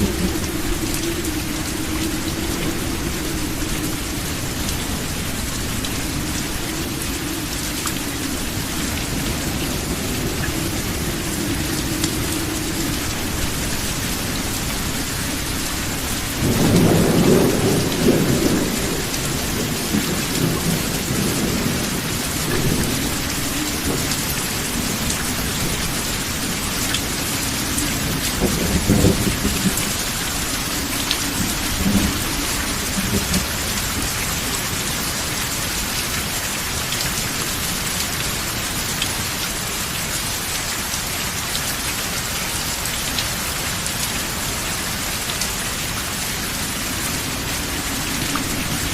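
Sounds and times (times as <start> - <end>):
rolling thunder: 0.0 - 36.0
steady rain: 0.0 - 48.9.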